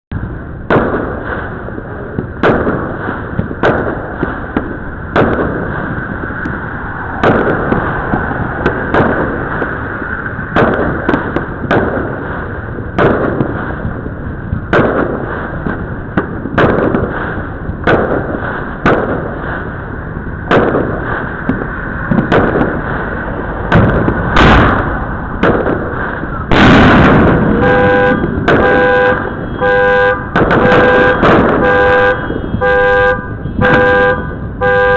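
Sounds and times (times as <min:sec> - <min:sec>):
distant fireworks pops and crackle: 0:00.1 - 0:34.9
fireworks bangs: 0:00.1 - 0:34.9
car horn toots: 0:27.5 - 0:34.9.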